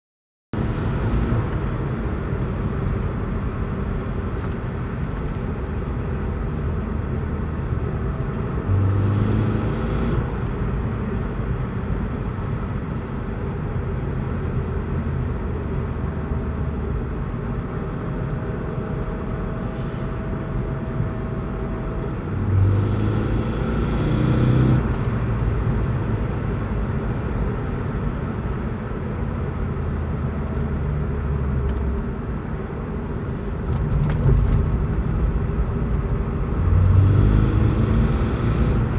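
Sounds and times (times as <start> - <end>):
car engine accelerating: 8.2 - 10.6, 19.0 - 26.1, 33.3 - 38.9.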